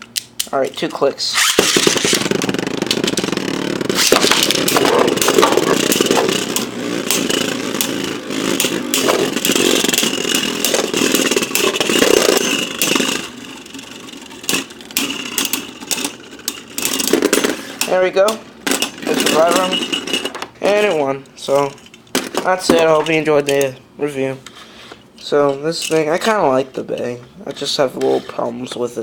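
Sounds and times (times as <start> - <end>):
tops clashing with sharp clacks: 0.0 - 23.8
spinning tops whirring and scraping: 0.8 - 23.7.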